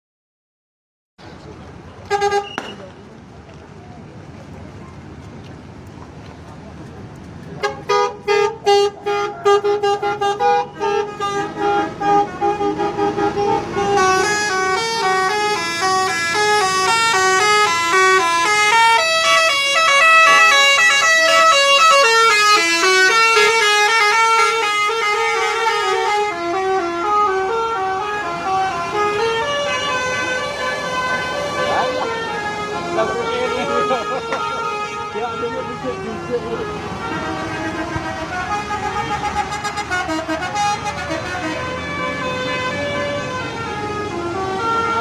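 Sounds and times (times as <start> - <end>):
musical bus horn melody: 2.1 - 2.7, 7.6 - 45.0.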